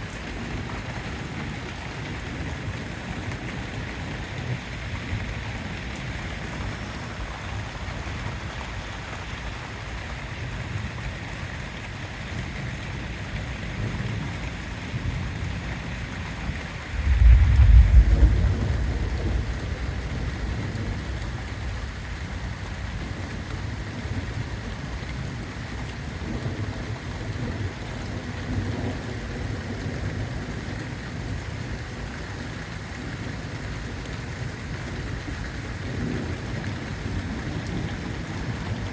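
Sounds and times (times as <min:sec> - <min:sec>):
steady rain: 0:00.0 - 0:38.9
deep thunderclap rumbling: 0:16.7 - 0:21.8.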